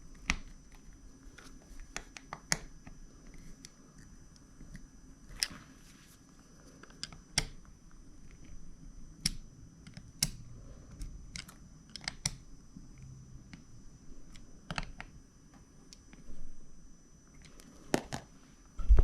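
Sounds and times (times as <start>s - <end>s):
plastic parts clicking and tapping: 9.2s - 12.4s, 14.3s - 15.2s.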